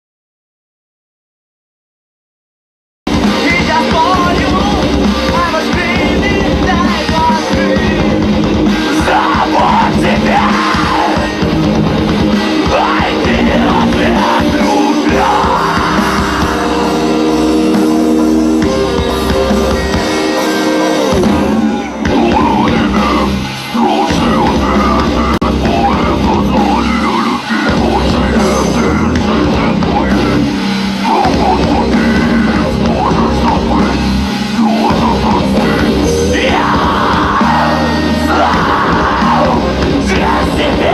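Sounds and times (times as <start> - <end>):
heavy rock band playing: 3.1 - 40.9
person yelling vocals: 12.6 - 17.4, 21.0 - 40.9.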